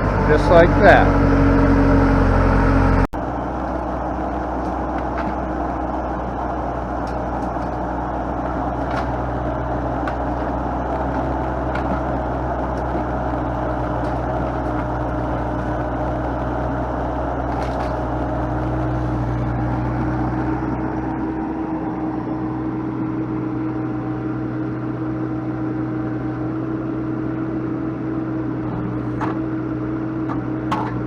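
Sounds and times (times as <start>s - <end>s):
heavy equipment engine running: 0.0s - 31.0s
faint steady whine: 3.1s - 26.4s.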